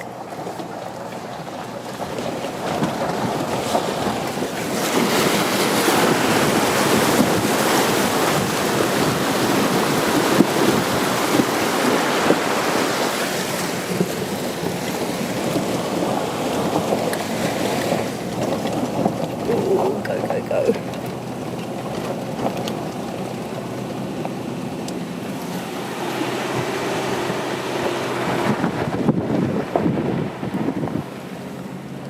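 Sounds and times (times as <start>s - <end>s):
water rushing and splashing: 0.0s - 32.0s
wind noise on microphone: 2.0s - 20.9s, 25.0s - 31.6s.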